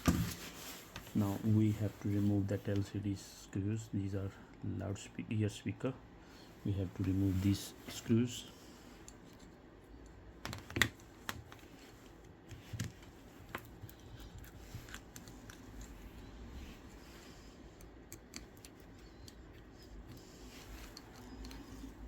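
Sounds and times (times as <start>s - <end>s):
small tools clicking on phone: 17.8s - 20.2s.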